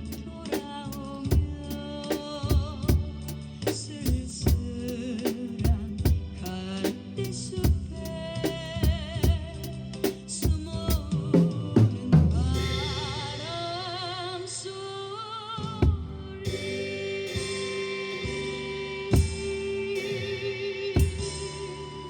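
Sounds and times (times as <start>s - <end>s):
recorded song with vibrato melody: 16.4s - 22.0s.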